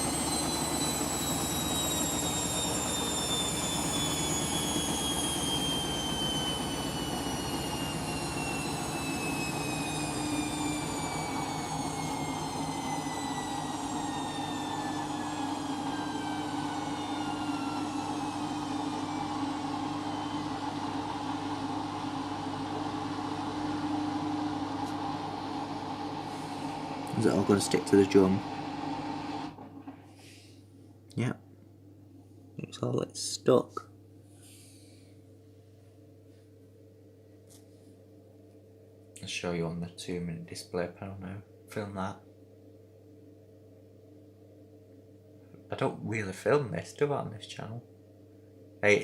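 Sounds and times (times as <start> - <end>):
washing machine motor whine: 0.0 - 30.5
steady mechanical hum: 0.0 - 49.0.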